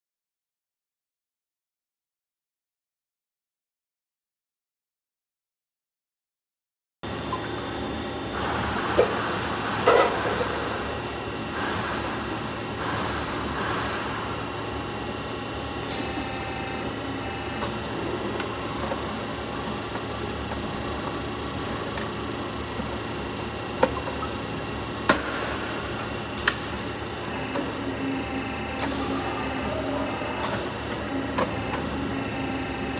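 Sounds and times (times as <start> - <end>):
machine humming: 7.0 - 32.9.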